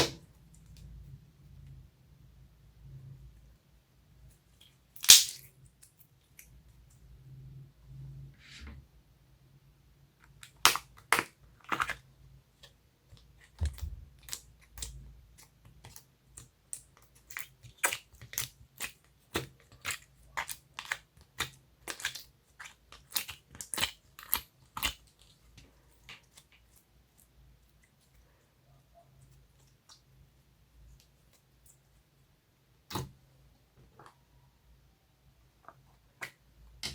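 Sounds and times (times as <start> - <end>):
slime squished by hand: 5.0 - 5.5.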